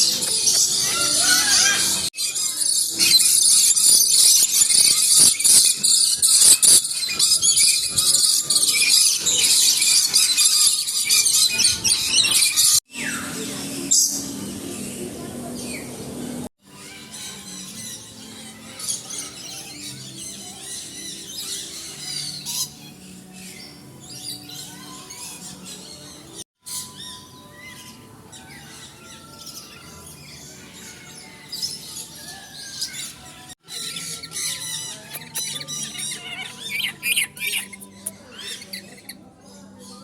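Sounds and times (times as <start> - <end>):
bird squawks: 0.0 - 13.3, 16.7 - 23.6, 31.0 - 39.3
birds chirping and twittering: 0.0 - 40.0.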